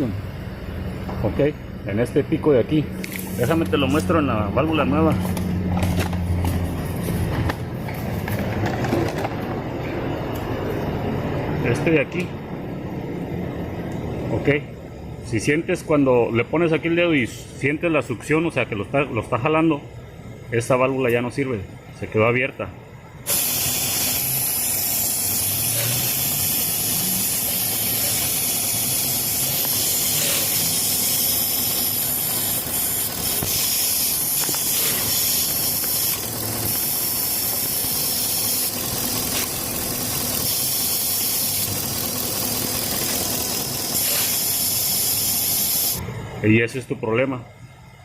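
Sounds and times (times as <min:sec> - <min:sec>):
air hissing into valve: 0:23.3 - 0:39.5, 0:40.4 - 0:41.8, 0:42.9 - 0:46.0
truck engine idling: 0:30.9 - 0:40.5.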